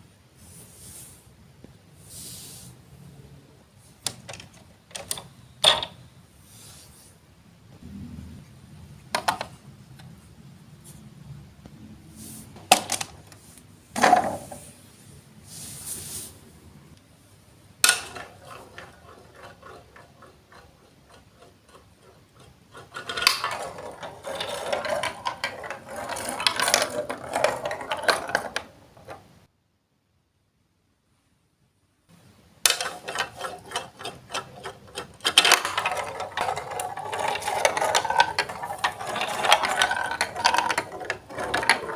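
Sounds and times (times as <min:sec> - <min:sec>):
marbles rattling on plastic track: 0:17.8 - 0:29.2, 0:32.7 - 0:41.9.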